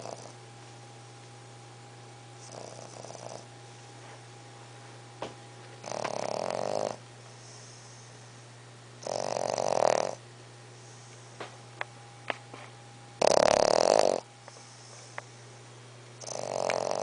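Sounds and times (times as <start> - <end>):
puppy snoring: 0.0 - 0.4, 2.4 - 3.5, 5.8 - 8.1, 9.0 - 10.2, 13.2 - 15.2, 16.2 - 17.0.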